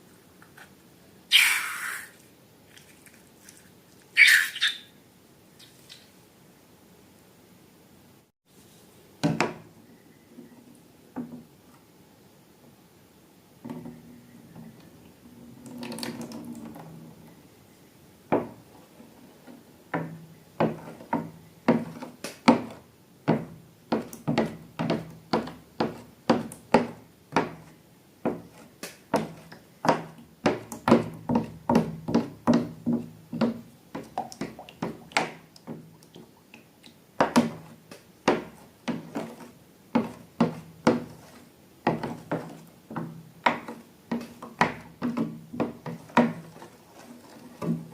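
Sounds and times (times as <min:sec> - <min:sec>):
rustling: 0:45.8 - 0:47.9.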